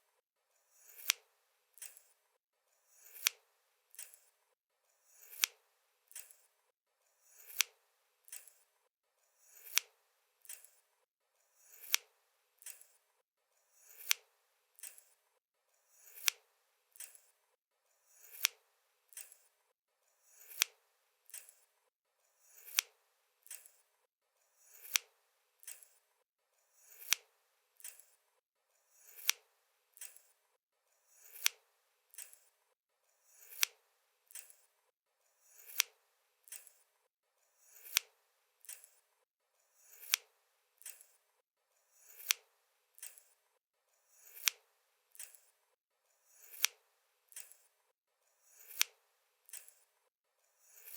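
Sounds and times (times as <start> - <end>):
scissors snipping: 0.9 - 2.2, 3.0 - 4.3, 5.2 - 6.5, 7.4 - 8.6, 9.6 - 10.8, 11.7 - 13.0, 13.9 - 15.2, 16.0 - 16.4, 17.0 - 17.3, 18.2 - 19.5, 20.4 - 21.6, 22.6 - 23.8, 24.7 - 26.0, 26.9 - 28.2, 29.1 - 29.4, 30.0 - 30.3, 31.2 - 32.5, 33.4 - 34.6, 35.6 - 36.8, 37.7 - 39.0, 39.9 - 41.2, 42.1 - 43.3, 44.2 - 45.5, 46.4 - 47.7, 48.6 - 49.8.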